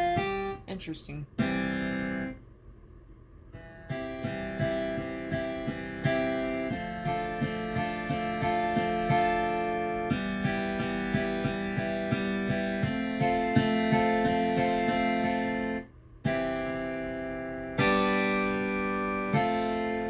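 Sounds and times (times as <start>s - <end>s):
digital piano plucked notes: 3.6s - 20.0s.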